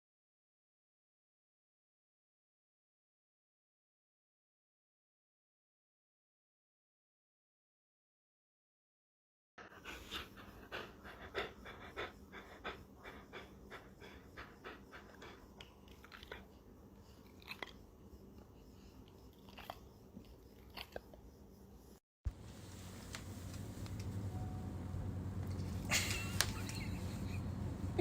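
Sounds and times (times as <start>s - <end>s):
dog chewing and crunching: 15.2s - 16.5s, 17.1s - 17.8s, 19.2s - 21.2s.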